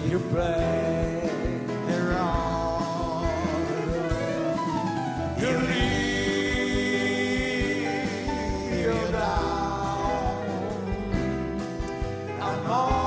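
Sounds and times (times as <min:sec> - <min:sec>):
band playing: 0:00.0 - 0:13.0
person singing long gliding notes: 0:05.4 - 0:11.1.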